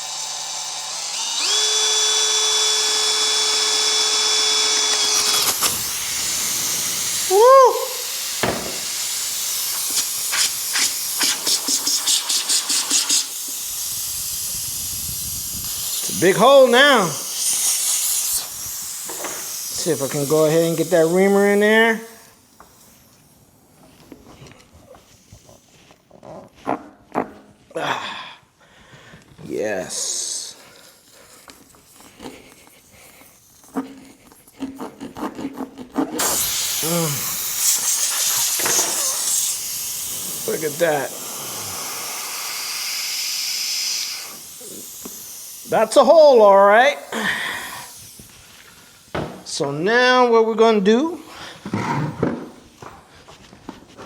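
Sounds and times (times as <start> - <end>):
reamer rasping against rubber: 1.2 - 21.6, 30.0 - 49.2
air hissing out of tire: 2.2 - 25.8, 29.9 - 34.5, 36.2 - 49.6, 51.2 - 51.8.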